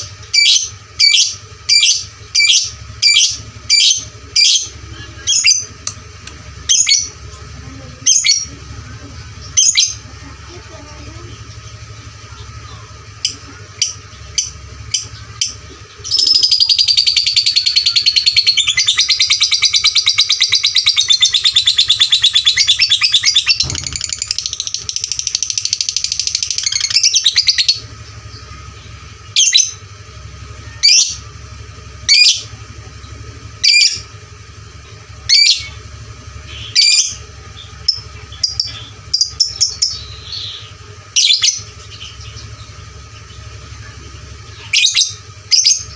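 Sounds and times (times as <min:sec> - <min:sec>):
lovebird chirping and trilling: 0:00.0 - 0:05.9, 0:06.5 - 0:34.1, 0:34.8 - 0:45.9
steady low hum: 0:00.0 - 0:45.9
sharp bird calls: 0:11.3 - 0:31.4, 0:34.8 - 0:45.9.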